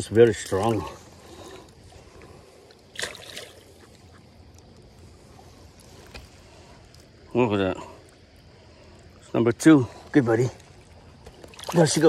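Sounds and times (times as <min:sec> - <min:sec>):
creek water running: 0:00.0 - 0:12.0
fish splashing: 0:00.4 - 0:07.2, 0:10.6 - 0:12.0.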